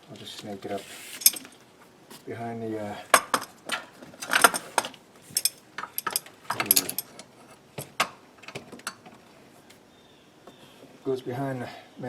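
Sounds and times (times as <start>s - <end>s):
metal hose clinking on engine parts: 1.2s - 1.5s, 3.1s - 9.1s.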